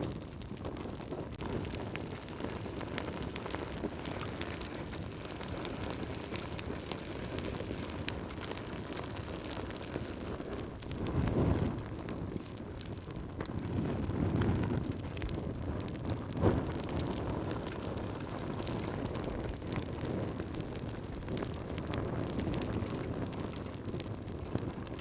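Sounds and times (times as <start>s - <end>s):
fire crackling and popping: 0.0s - 25.0s
low rumble of flames: 0.0s - 25.0s.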